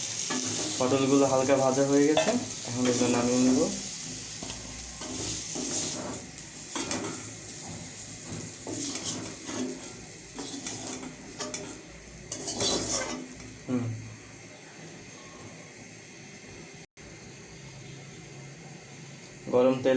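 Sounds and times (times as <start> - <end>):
utensil scraping frying pan: 0.0 - 13.6
faint sizzling: 0.0 - 19.9.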